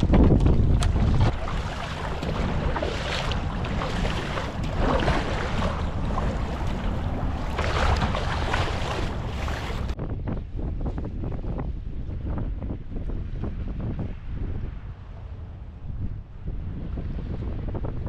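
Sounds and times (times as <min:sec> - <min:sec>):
sea water sloshing and splashing: 0:00.0 - 0:10.0
wind buffeting microphone: 0:00.0 - 0:18.0.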